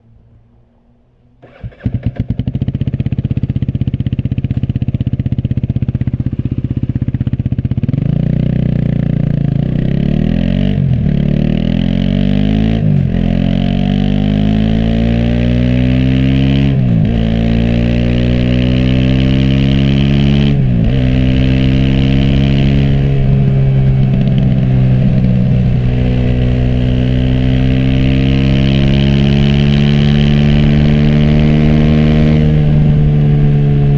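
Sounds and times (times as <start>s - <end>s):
motorcycle engine revving: 1.4s - 33.9s.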